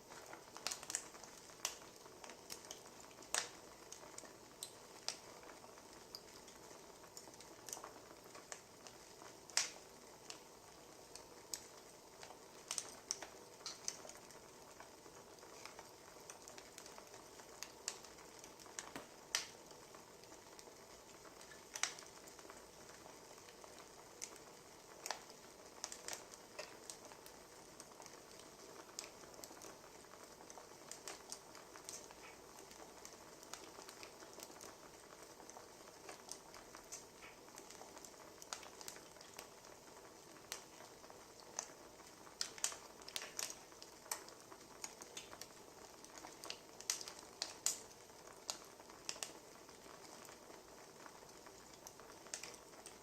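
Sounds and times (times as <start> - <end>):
faint steady hiss: 0.0 - 53.0
wood fire crackling: 0.0 - 53.0.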